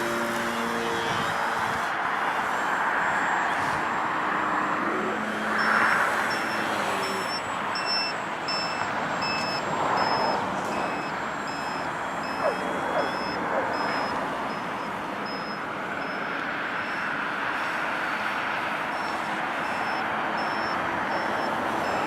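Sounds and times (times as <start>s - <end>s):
short high electronic beeps: 5.6s - 17.0s.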